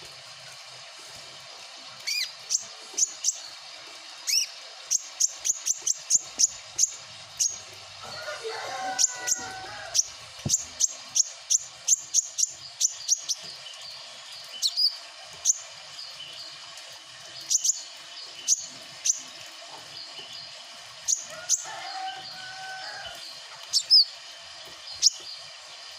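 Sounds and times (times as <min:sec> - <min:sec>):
small bird chirping: 0:02.0 - 0:03.6, 0:04.2 - 0:07.7, 0:09.0 - 0:16.6, 0:17.3 - 0:24.2, 0:24.8 - 0:25.9.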